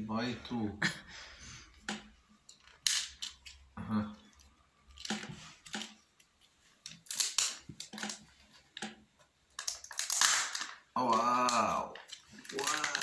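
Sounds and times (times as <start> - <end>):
packaging crinkling and clicking: 6.9 - 9.0, 11.5 - 13.0.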